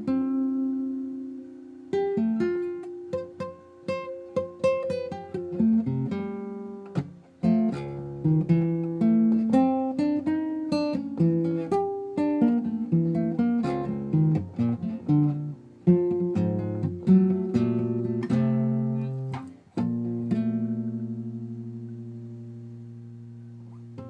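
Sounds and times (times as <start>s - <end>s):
acoustic guitar: 0.0s - 24.0s.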